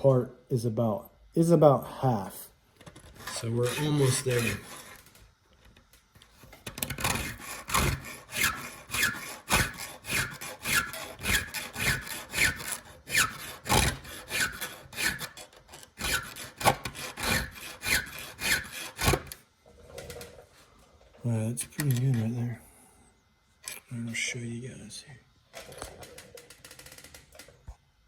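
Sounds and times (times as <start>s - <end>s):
file scraping saw chain: 3.1s - 5.1s, 6.8s - 19.4s.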